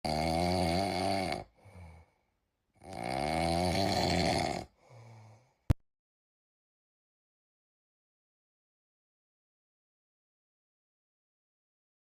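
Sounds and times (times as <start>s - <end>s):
cat snoring: 0.0s - 1.9s, 2.8s - 4.8s.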